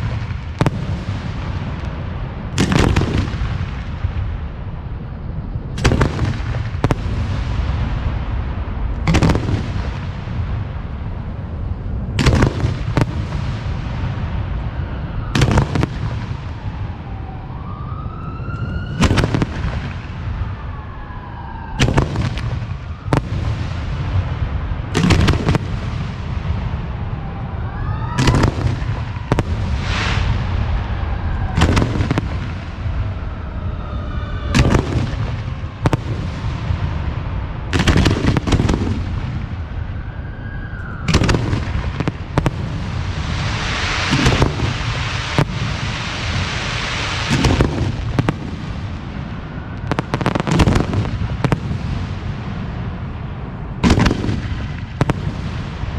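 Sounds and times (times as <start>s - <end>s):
firework shells booming: 0.0s - 4.6s, 5.7s - 11.2s, 12.1s - 14.7s, 15.3s - 16.6s, 19.0s - 20.4s, 21.8s - 27.0s, 28.2s - 33.2s, 34.5s - 39.7s, 41.0s - 53.0s, 53.8s - 55.9s
low rumble: 0.0s - 54.0s
distant siren wailing: 14.2s - 24.9s, 26.5s - 37.8s, 38.4s - 46.1s, 48.1s - 51.6s.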